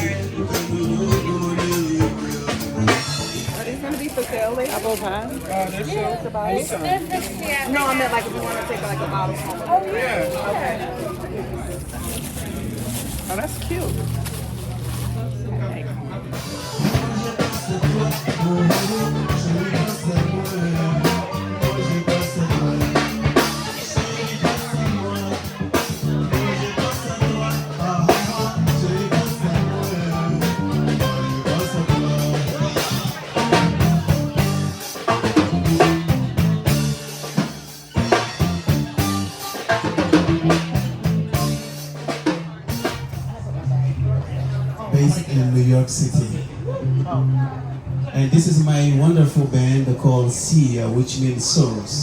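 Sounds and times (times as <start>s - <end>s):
drum hits: 0.0s - 3.7s, 16.4s - 43.3s
bass line: 0.0s - 3.8s, 12.4s - 52.0s.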